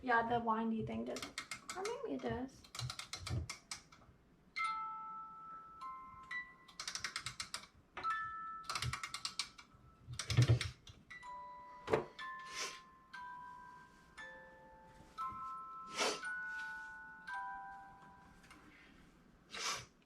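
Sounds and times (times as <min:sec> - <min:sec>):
music box chiming notes: 0:04.6 - 0:06.8, 0:08.0 - 0:09.0, 0:11.1 - 0:18.6.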